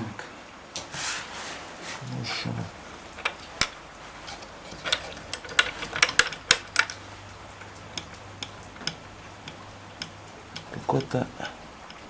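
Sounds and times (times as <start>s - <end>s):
metallic clicks of engine piston: 3.2s - 7.0s, 7.6s - 11.2s.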